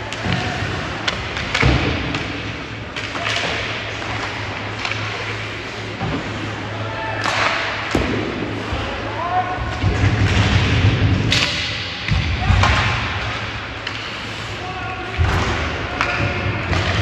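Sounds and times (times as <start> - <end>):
sticks and puck hitting boards: 7.2 - 8.9, 9.6 - 17.0
steady low hum: 9.7 - 17.0
skates scraping ice: 12.7 - 17.0.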